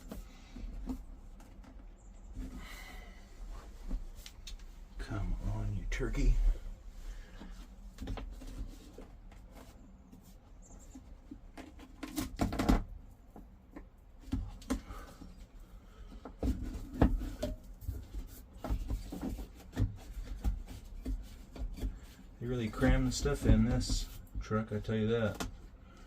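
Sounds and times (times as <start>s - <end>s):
knocks clicks and scraping of plastic: 7.4s - 9.8s, 11.0s - 26.0s.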